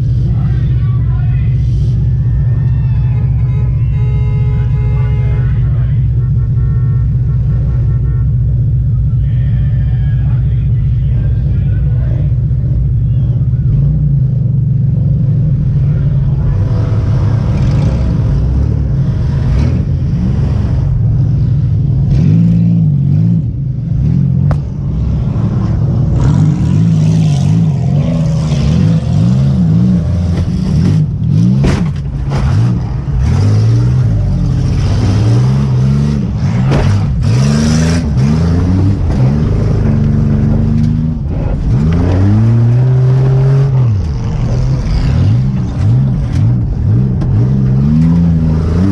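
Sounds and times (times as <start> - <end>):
car engine revving: 10.2 - 48.9.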